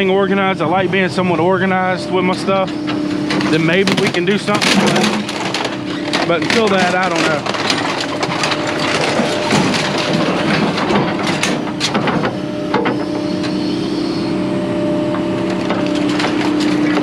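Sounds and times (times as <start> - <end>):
machine hum: 2.5 - 17.0
scrap crunching and clattering: 3.2 - 13.1.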